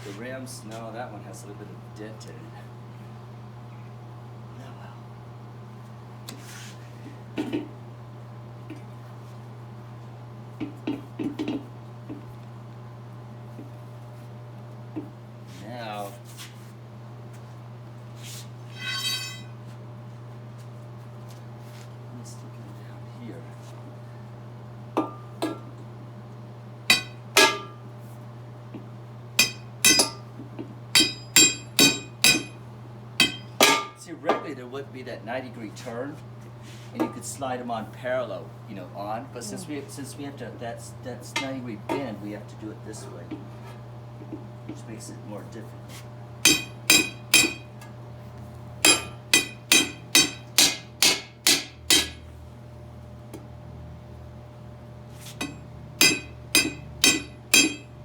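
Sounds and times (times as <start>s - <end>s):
hammer striking steel rim: 26.9s - 27.8s, 29.4s - 30.2s, 31.0s - 32.6s, 33.2s - 34.0s, 46.5s - 47.7s, 48.9s - 52.2s, 55.4s - 57.9s.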